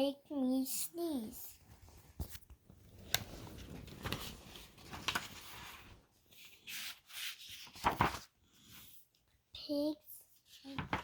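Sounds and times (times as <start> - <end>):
paper rustling: 1.6 - 9.0, 10.4 - 11.0.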